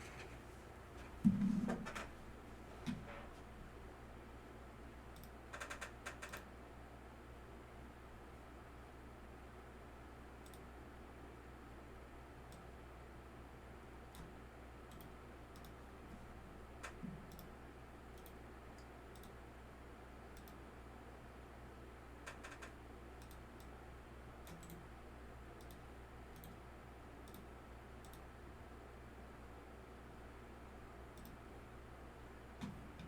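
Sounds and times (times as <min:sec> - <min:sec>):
steady low hum: 0:00.0 - 0:05.5, 0:06.4 - 0:33.0
faint clicks: 0:10.4 - 0:10.6, 0:14.9 - 0:15.8, 0:20.4 - 0:20.6, 0:26.4 - 0:26.6, 0:28.0 - 0:28.3, 0:31.2 - 0:31.4.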